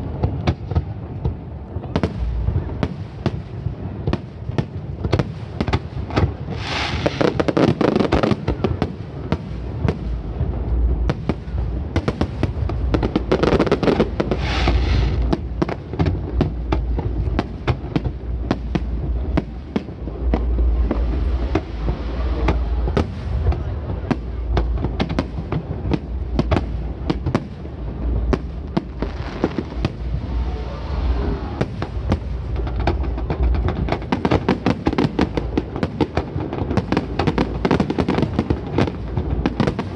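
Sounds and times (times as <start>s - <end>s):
firework bursts and pops: 0.0s - 39.9s
low rumble: 9.2s - 34.2s.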